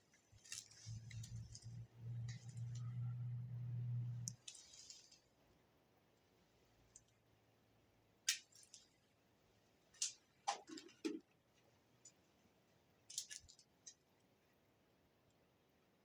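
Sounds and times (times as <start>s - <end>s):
sharp clicks and light knocks: 10.0s - 12.2s, 13.1s - 14.1s.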